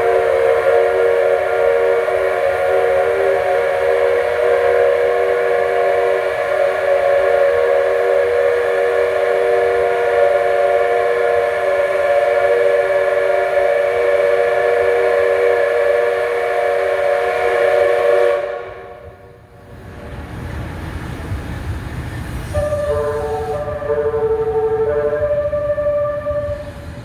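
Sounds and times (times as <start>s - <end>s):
musical train horn melody: 0.0s - 19.4s, 22.5s - 27.0s
multi-tone train whistle: 0.0s - 19.5s, 22.5s - 27.0s
train rumbling: 0.0s - 27.0s.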